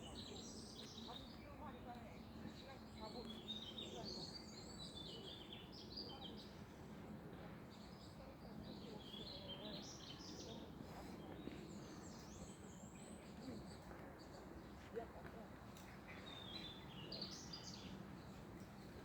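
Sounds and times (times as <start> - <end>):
small birds chirping: 15.7 - 19.0.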